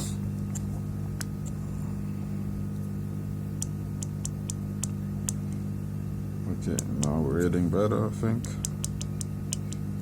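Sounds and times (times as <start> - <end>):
steady low hum: 0.0 - 10.0
probe tips tapping circuit board: 3.6 - 5.6, 6.6 - 7.5, 8.4 - 9.9.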